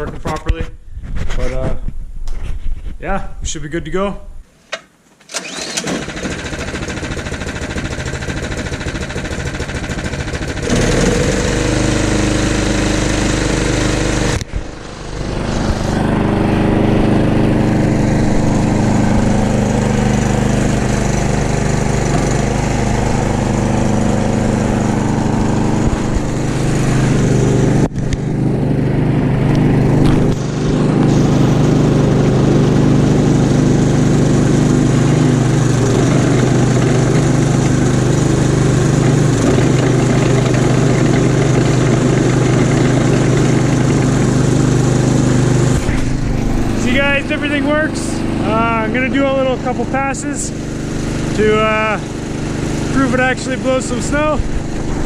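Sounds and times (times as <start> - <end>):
snowblower engine running: 5.3 - 55.0.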